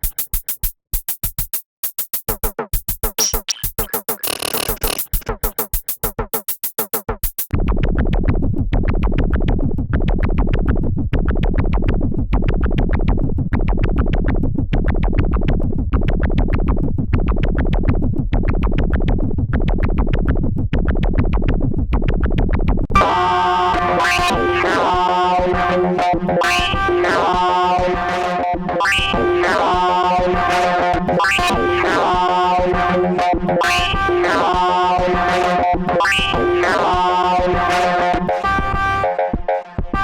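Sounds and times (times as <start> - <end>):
electronic drum patterns: 0.0 - 7.8, 23.6 - 40.0.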